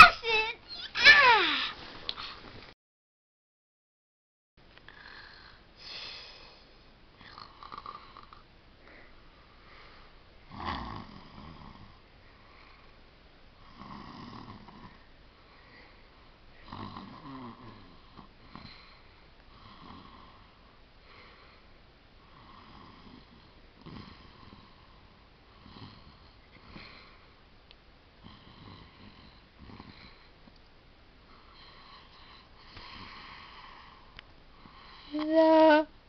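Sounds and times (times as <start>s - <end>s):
girl snoring: 7.2s - 9.0s, 10.5s - 12.0s, 13.6s - 15.0s, 16.6s - 18.9s, 19.5s - 20.6s, 22.3s - 24.9s, 25.5s - 27.1s, 28.2s - 30.2s, 31.5s - 35.9s.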